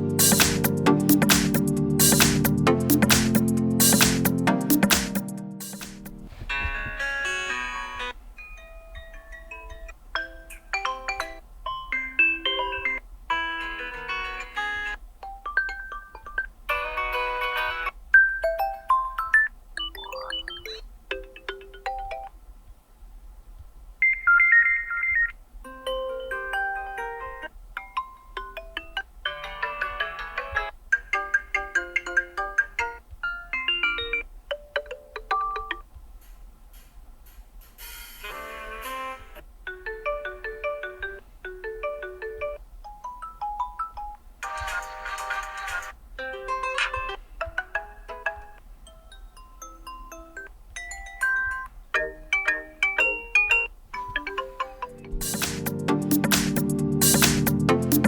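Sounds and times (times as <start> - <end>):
marimba-like ringtone melodies: 6.5 - 22.3, 24.0 - 35.9, 38.4 - 58.0
electronic ringtone chimes: 15.6 - 20.8, 24.0 - 27.5.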